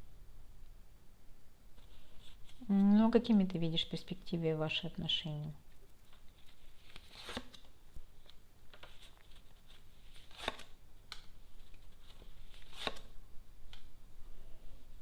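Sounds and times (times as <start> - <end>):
cards rustling: 6.1 - 13.2.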